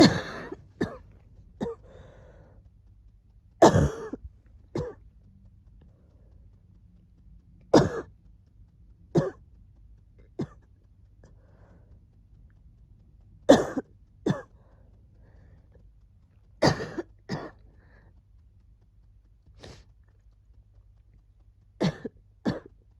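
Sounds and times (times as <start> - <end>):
person coughing: 0.0 - 2.0, 3.6 - 4.2, 4.8 - 5.0, 7.8 - 8.1, 13.5 - 14.5, 16.6 - 17.6, 21.8 - 22.7
throat clearing: 0.0 - 2.4, 3.6 - 5.0, 7.8 - 8.1, 10.3 - 10.7, 13.5 - 14.5, 16.6 - 18.0, 21.8 - 22.8.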